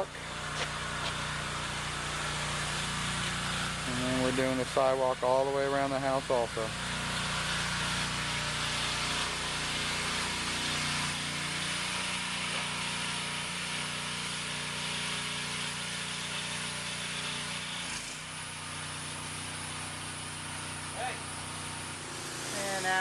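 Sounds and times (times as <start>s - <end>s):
pressure washer engine running: 0.0s - 23.0s.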